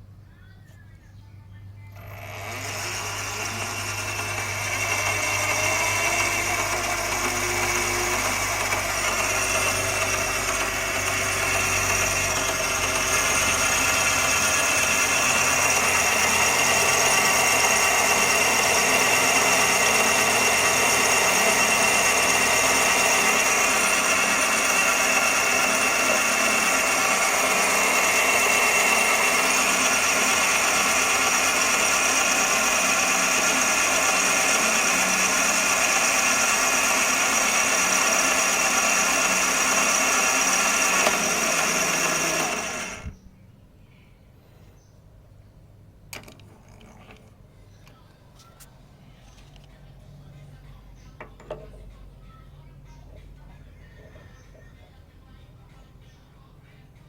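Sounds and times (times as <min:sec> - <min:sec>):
lathe motor whining and humming: 0:01.9 - 0:43.2.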